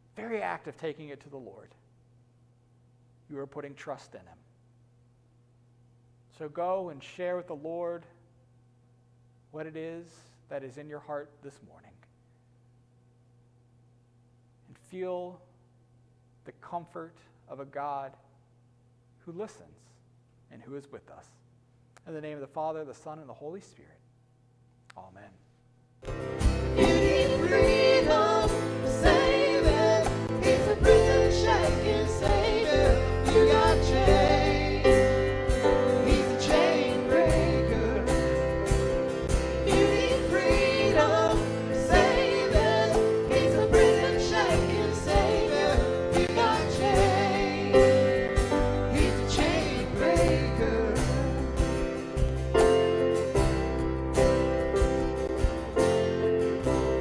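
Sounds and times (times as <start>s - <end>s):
instrumental accompaniment: 26.0s - 57.0s
person singing: 26.7s - 51.6s.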